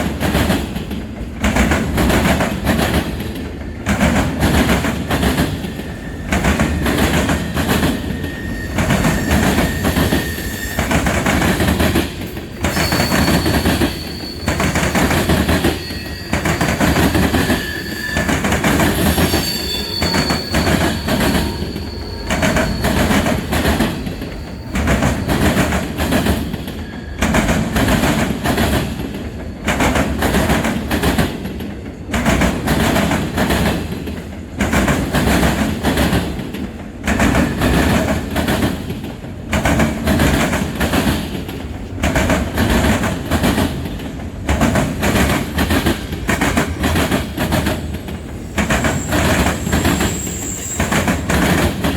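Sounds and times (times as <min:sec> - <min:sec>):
freight train rumble: 0:00.0 - 0:51.9
train wheels clacking over rail joints: 0:00.0 - 0:51.9
high wheel squeal: 0:05.4 - 0:11.6, 0:12.6 - 0:27.4, 0:48.3 - 0:51.8.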